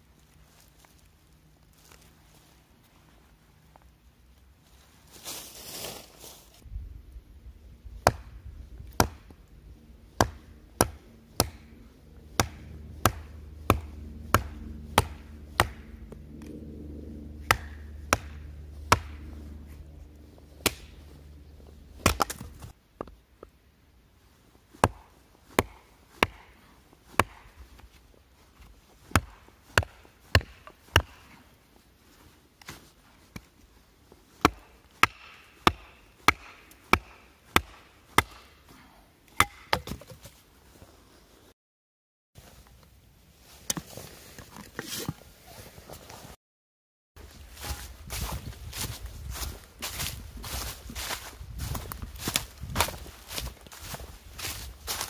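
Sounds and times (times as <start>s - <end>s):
steady low rumble: 6.6s - 22.8s
chopping strikes on wood: 8.0s - 9.3s, 10.2s - 16.0s, 17.4s - 19.3s, 20.6s - 21.0s, 22.0s - 22.7s, 24.8s - 26.6s, 27.2s - 27.6s, 29.1s - 31.3s, 34.4s - 38.6s, 39.4s - 40.2s.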